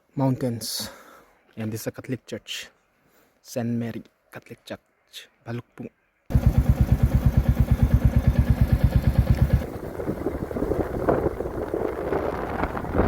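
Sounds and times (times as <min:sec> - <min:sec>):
motorcycle engine idling: 0:06.3 - 0:13.0.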